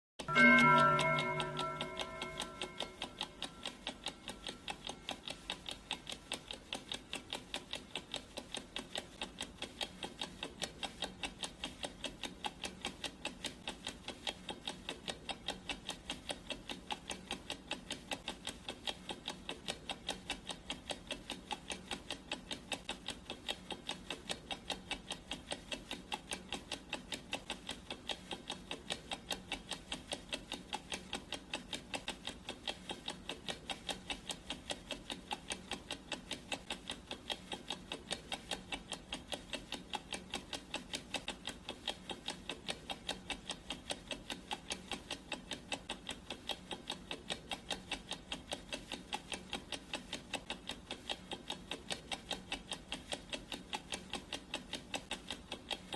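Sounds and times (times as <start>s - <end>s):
bell-like ringing tone: 0.2s - 4.6s
clock ticking: 0.2s - 55.9s.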